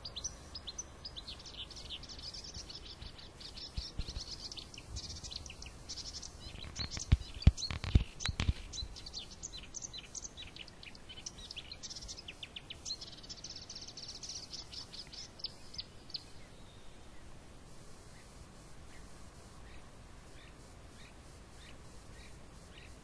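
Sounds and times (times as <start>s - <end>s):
birds chirping and singing: 0.0s - 17.3s.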